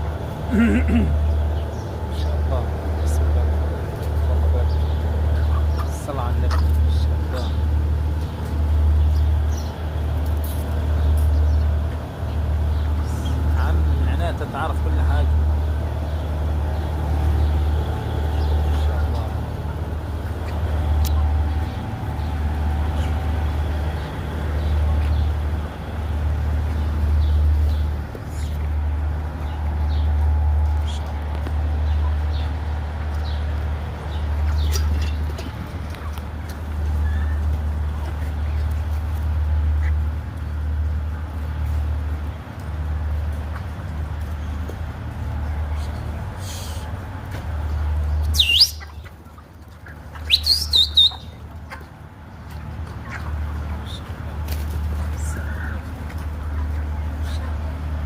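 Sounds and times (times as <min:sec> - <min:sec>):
chicks peeping: 0:00.0 - 0:58.0.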